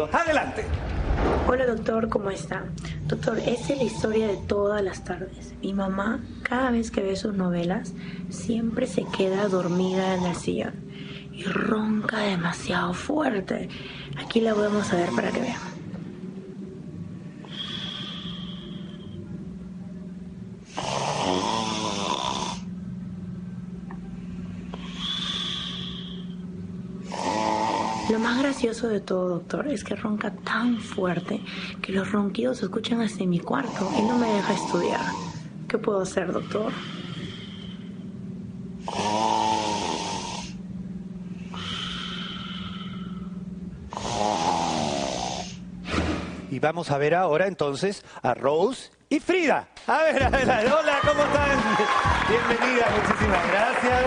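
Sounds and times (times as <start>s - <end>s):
woman snoring loudly: 3.2s - 4.6s, 8.9s - 10.5s, 14.3s - 15.8s, 20.7s - 22.7s, 24.7s - 26.3s, 27.0s - 28.6s, 33.5s - 35.5s, 38.8s - 40.6s, 41.4s - 43.2s, 43.9s - 45.6s.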